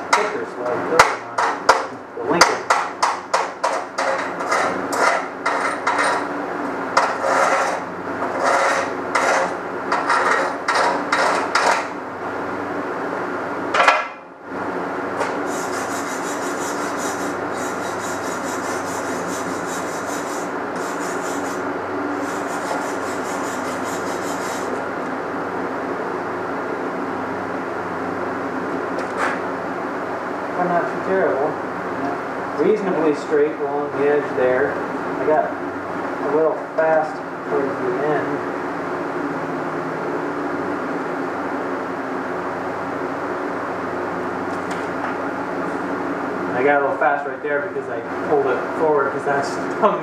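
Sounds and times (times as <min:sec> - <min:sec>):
scraping over weld bead: 0:07.0 - 0:11.9, 0:15.4 - 0:24.8.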